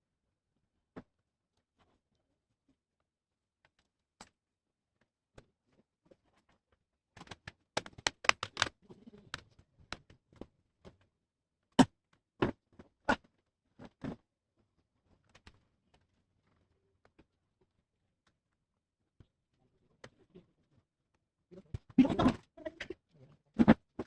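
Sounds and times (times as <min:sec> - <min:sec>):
plastic clicks: 0:07.2 - 0:10.1.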